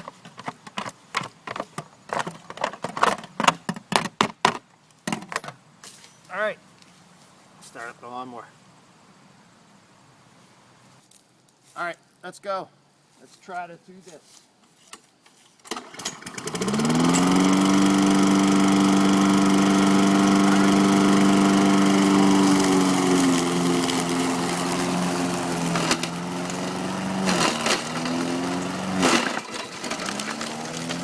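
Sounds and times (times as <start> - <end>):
lawn mower engine running: 15.7 - 31.0
mower blade knocking: 15.7 - 31.0.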